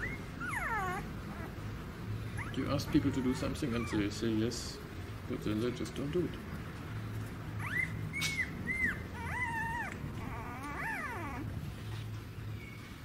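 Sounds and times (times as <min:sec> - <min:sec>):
puppy whimpering: 0:00.0 - 0:04.8, 0:07.5 - 0:11.8.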